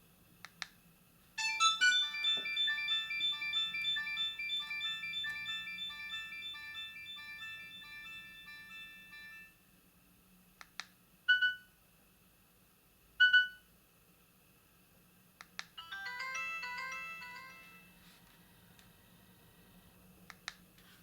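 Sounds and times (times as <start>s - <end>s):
fast rippling ringtone melody: 1.4s - 9.5s, 15.8s - 18.2s
phone ringtone tune: 1.4s - 9.6s, 15.8s - 18.2s.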